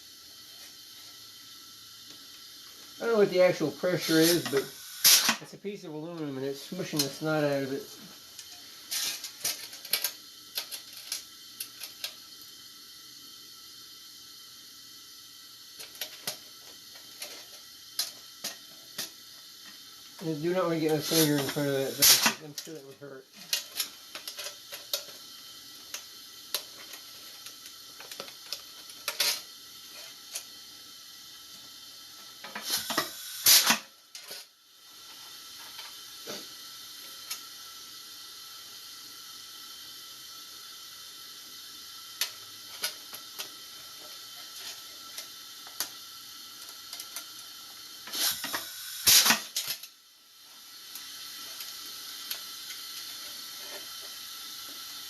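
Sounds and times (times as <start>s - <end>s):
steady air hiss: 0.0s - 55.0s
air riveter burst and clank: 4.0s - 5.4s, 8.4s - 12.1s, 20.8s - 22.5s, 28.0s - 30.4s, 32.4s - 34.4s, 48.0s - 49.9s.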